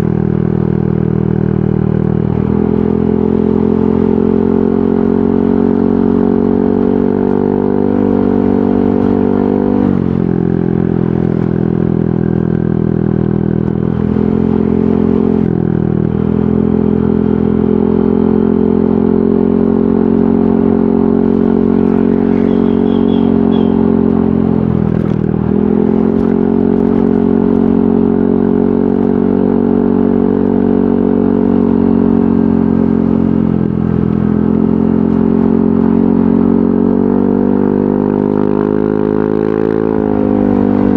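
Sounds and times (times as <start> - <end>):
scooter engine exhaust note: 9.2 - 35.7.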